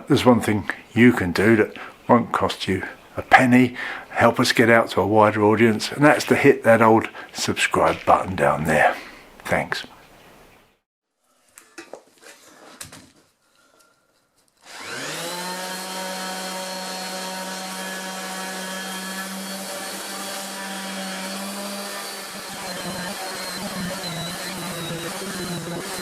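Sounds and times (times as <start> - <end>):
power tool motor whining: 14.6 - 26.0.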